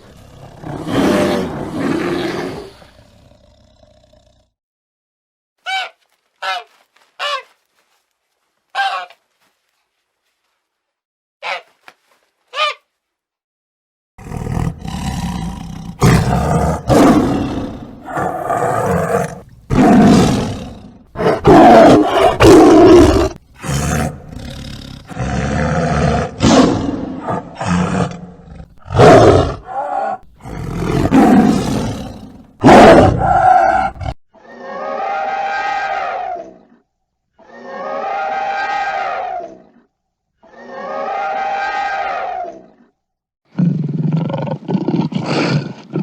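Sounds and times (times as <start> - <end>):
animal roars and growls: 0.0 - 4.6, 14.2 - 46.0.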